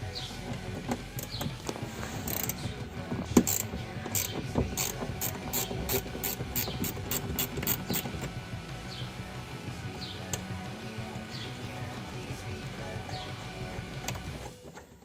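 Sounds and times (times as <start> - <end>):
ratchet wrench clicking: 0.5 - 2.7, 3.4 - 8.3.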